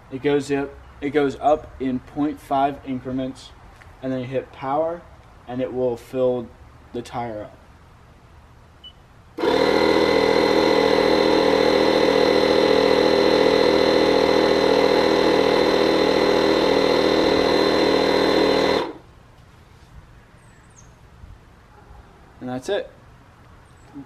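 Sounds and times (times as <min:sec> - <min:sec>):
tire inflator compressor running: 0:09.4 - 0:19.1.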